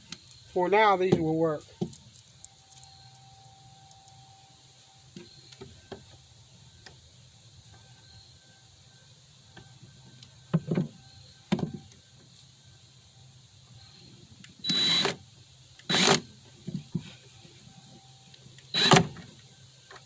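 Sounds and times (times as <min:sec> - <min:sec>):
cordless drill driving screws: 0:14.6 - 0:15.2, 0:15.9 - 0:16.2, 0:18.8 - 0:19.2.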